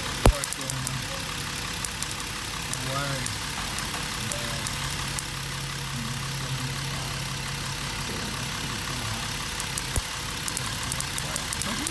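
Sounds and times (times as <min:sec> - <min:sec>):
car engine idling: 0:00.0 - 0:11.9
spark arcing clicks: 0:00.2 - 0:05.4, 0:09.6 - 0:11.9.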